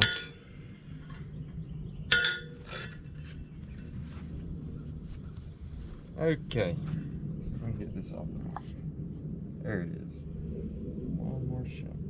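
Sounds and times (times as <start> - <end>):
steel part clinking: 0.0 - 0.4, 2.1 - 3.2.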